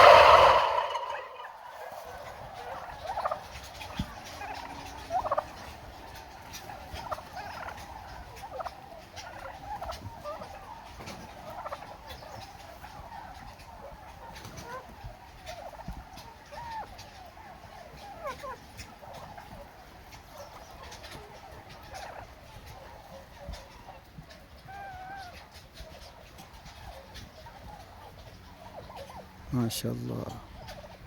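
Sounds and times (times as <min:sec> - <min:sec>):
loud shouted call: 0:00.0 - 0:01.6
turkeys gobbling: 0:00.0 - 0:31.0.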